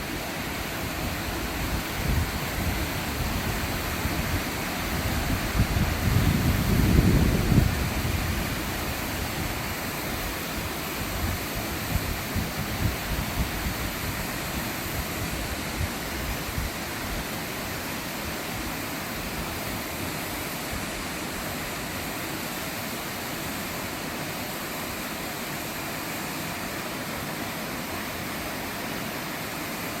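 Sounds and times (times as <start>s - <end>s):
waterfall roaring: 0.0s - 30.0s
wind buffeting microphone: 1.1s - 9.6s.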